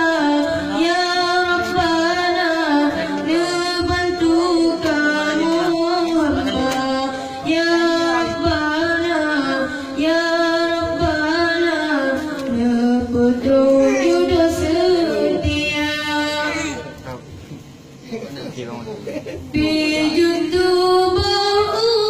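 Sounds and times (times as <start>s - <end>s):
high voice singing: 0.0s - 17.0s.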